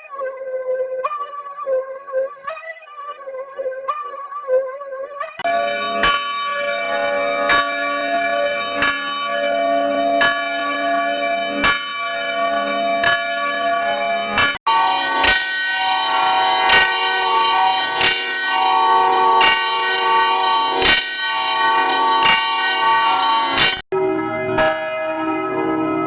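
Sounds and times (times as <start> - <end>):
church bell tolling: 5.4 - 26.0.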